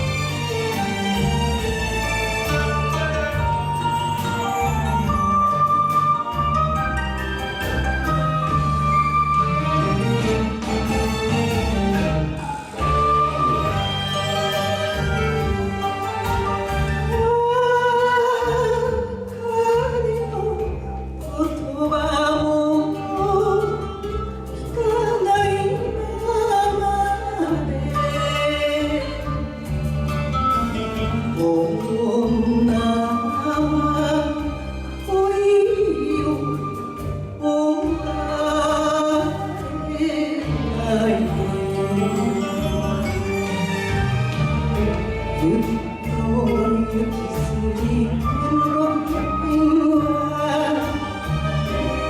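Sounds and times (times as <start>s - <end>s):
woman singing a ballad: 17.1s - 29.7s, 30.5s - 43.1s, 45.3s - 52.0s.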